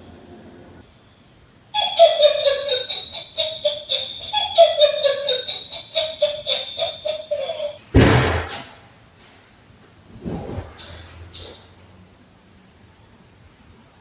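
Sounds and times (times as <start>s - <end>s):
electronic toy notes: 1.8s - 7.8s.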